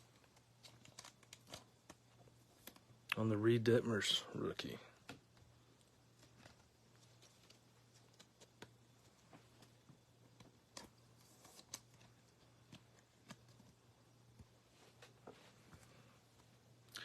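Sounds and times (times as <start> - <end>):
trading cards rustling and clicking: 0.0 - 2.9, 9.5 - 13.8
low steady hum: 0.0 - 17.0.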